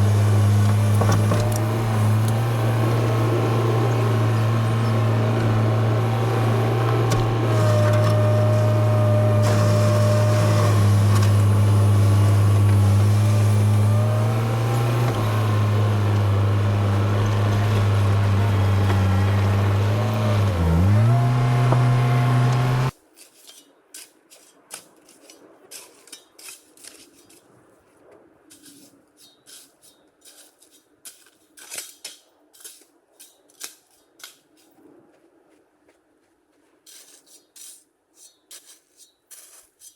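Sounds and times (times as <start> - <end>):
heavy machine engine running: 0.0 - 22.9
faint clicks and scrapes: 23.1 - 39.9.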